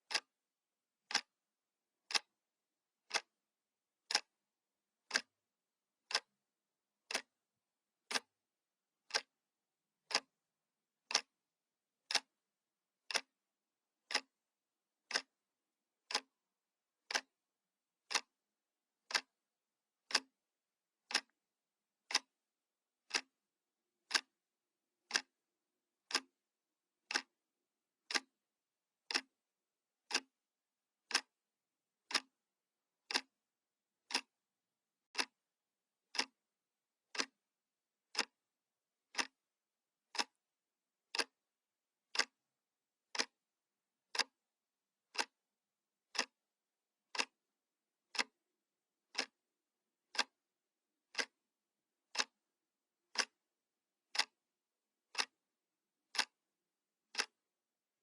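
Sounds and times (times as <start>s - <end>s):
analog clock ticking: 1.1s - 1.3s, 2.1s - 2.3s, 3.1s - 3.3s, 5.1s - 5.3s, 11.1s - 11.3s, 13.1s - 13.3s, 14.1s - 14.3s, 16.1s - 16.3s, 17.1s - 17.3s, 18.1s - 18.3s, 19.1s - 19.3s, 20.1s - 20.3s, 21.1s - 21.3s, 22.1s - 22.3s, 23.1s - 23.3s, 24.1s - 24.3s, 25.1s - 25.3s, 26.1s - 26.3s, 27.1s - 27.3s, 28.1s - 28.3s, 29.1s - 29.3s, 30.1s - 30.3s, 31.1s - 31.3s, 32.1s - 32.3s, 33.1s - 33.3s, 34.1s - 34.3s, 35.1s - 35.4s, 36.1s - 36.4s, 37.1s - 37.4s, 38.1s - 38.4s, 39.1s - 39.4s, 40.1s - 40.4s, 41.1s - 41.3s, 42.1s - 42.4s, 43.1s - 43.4s, 45.1s - 45.3s, 46.1s - 46.3s, 47.1s - 47.4s, 48.1s - 48.4s, 49.1s - 49.3s, 50.1s - 50.4s, 51.1s - 51.3s, 53.1s - 53.4s, 54.1s - 54.4s, 56.2s - 56.4s, 57.1s - 57.4s.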